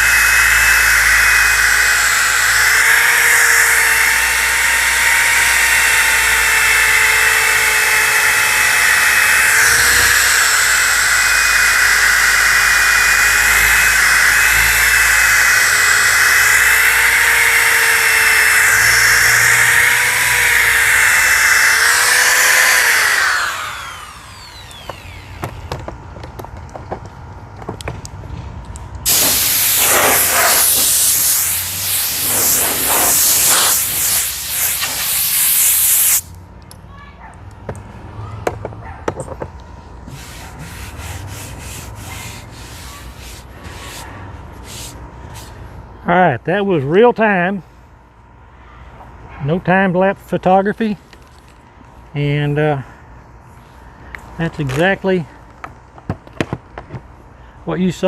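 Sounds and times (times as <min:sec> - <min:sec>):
disc sander whining: 0:00.0 - 0:25.9, 0:29.1 - 0:35.2
abrasive hissing on wood: 0:29.1 - 0:36.3.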